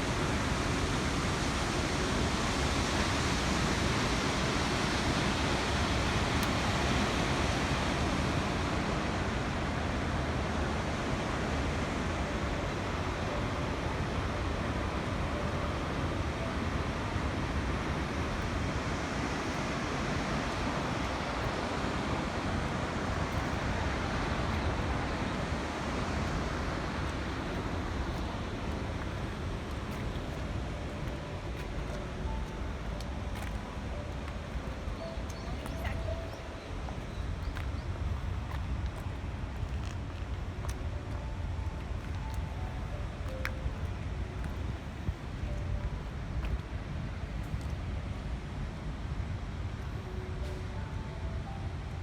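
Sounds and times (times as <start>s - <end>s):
water rushing from dam: 0.0s - 52.0s.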